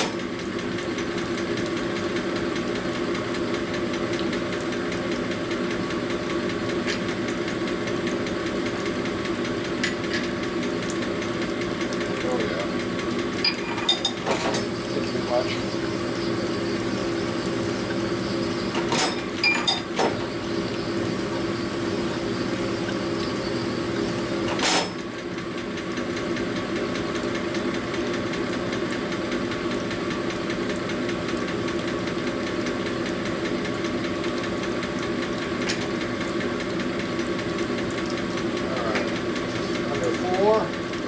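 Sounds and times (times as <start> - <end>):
motor-driven machine humming: 7.2 - 25.3.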